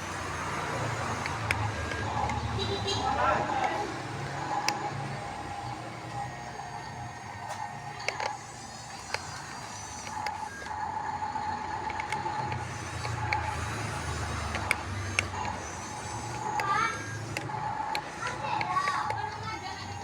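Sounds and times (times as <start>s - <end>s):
electric motors whining: 0.0s - 20.0s
sharp clicks and ticks: 0.0s - 20.0s.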